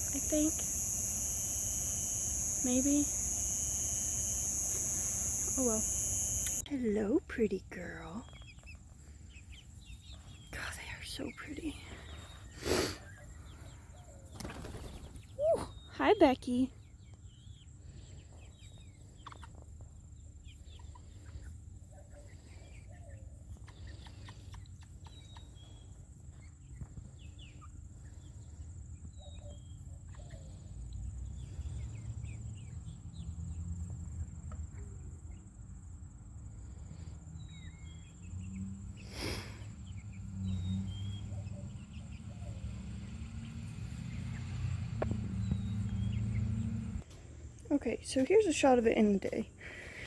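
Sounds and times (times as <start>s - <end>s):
chickens peeping and chirping: 0.0s - 6.6s.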